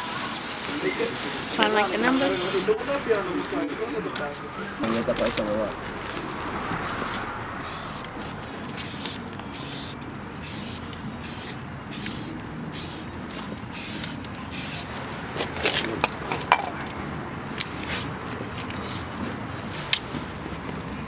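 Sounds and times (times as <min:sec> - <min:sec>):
aerosol spray can hissing: 0:00.0 - 0:02.7, 0:06.1 - 0:08.1, 0:08.8 - 0:13.1, 0:13.7 - 0:14.9.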